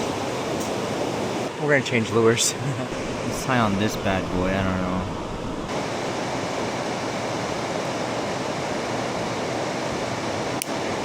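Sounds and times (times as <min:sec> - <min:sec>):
river water rushing: 0:02.7 - 0:11.0.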